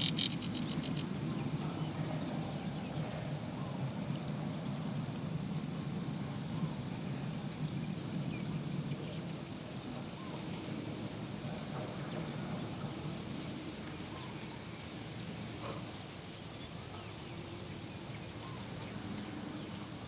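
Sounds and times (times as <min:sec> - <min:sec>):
bird chirping: 0:00.0 - 0:01.1.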